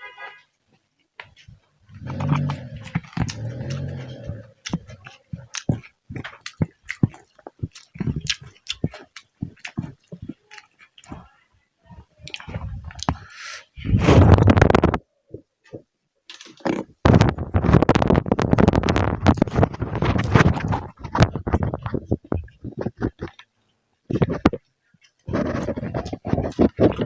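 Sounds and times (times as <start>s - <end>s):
food chewing crunches: 1.3s - 11.3s, 15.6s - 27.0s.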